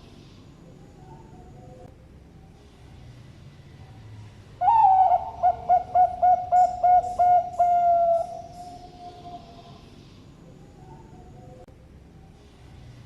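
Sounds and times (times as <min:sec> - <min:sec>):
dove cooing song: 0:04.6 - 0:09.8.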